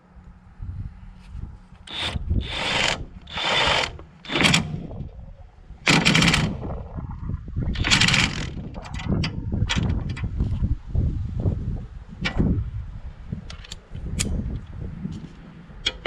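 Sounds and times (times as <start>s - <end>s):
impact wrench driving bolts: 1.8s - 4.9s, 5.9s - 6.6s
small metallic clicks: 13.5s - 14.4s.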